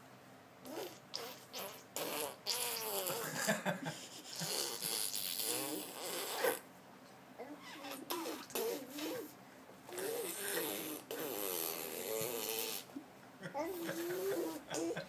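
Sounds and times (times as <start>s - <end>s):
baby blowing raspberries: 0.6s - 3.3s, 4.0s - 6.7s, 7.7s - 12.9s, 13.6s - 15.0s.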